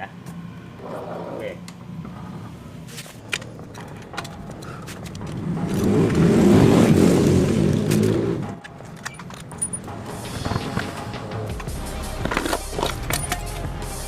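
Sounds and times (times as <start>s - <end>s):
motorbike engine revving: 5.0s - 8.7s.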